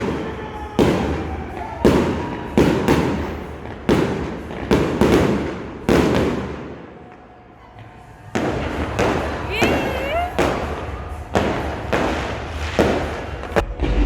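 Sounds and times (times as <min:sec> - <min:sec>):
fireworks bursting: 0:00.0 - 0:14.0.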